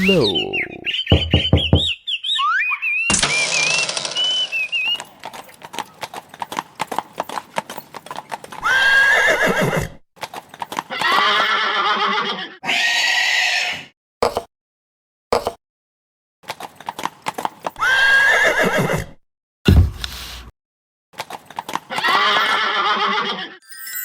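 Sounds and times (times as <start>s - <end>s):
hoofbeats clip-clopping: 4.8s - 9.6s, 10.2s - 11.6s, 16.5s - 17.8s, 21.2s - 22.8s
horse neighing and whinnying: 8.6s - 10.0s, 10.9s - 13.9s, 17.8s - 19.2s, 21.9s - 23.6s.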